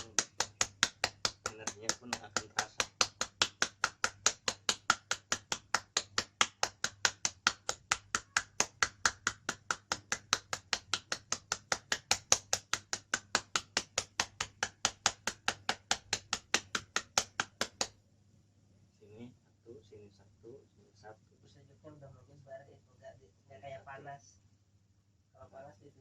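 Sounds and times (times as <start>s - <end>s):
rapid tapping on a body: 0.0s - 18.0s.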